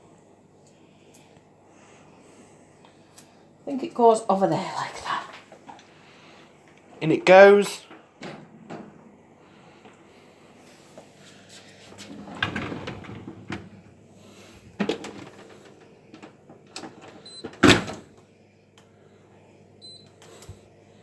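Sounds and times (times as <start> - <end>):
dishwasher rattles and knocks: 12.0 - 14.0, 14.7 - 18.0
dishwasher door thud: 12.1 - 13.9.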